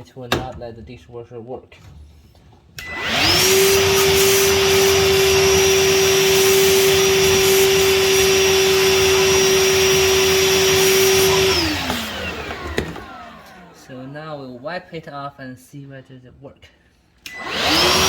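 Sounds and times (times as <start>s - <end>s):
electric motor whining: 2.8s - 14.1s, 17.3s - 18.0s.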